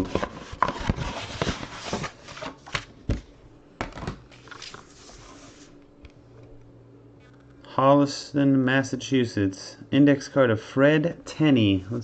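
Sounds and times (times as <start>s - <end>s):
paper envelope rustling: 0.0s - 2.8s, 4.3s - 5.8s.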